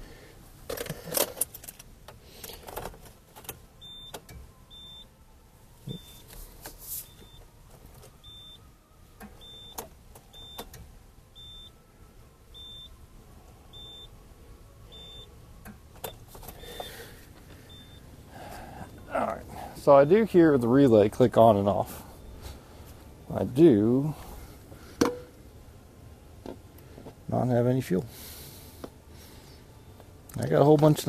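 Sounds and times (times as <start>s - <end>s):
high electronic warning beeps: 3.8s - 5.1s, 5.8s - 6.3s, 7.0s - 7.5s, 8.2s - 8.7s, 9.4s - 10.6s, 11.4s - 11.8s, 12.5s - 13.0s, 13.7s - 14.2s, 14.9s - 15.4s, 17.6s - 18.1s.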